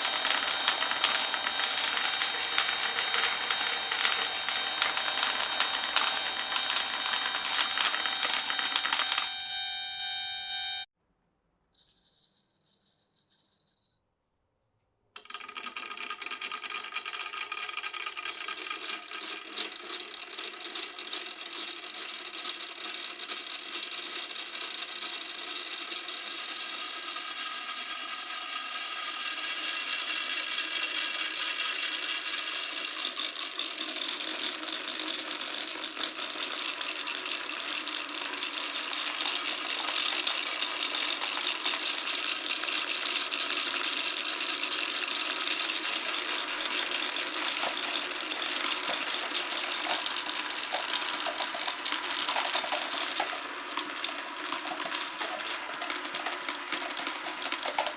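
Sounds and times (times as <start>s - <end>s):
marbles rattling on wooden track: 0.0s - 9.3s, 34.4s - 57.9s.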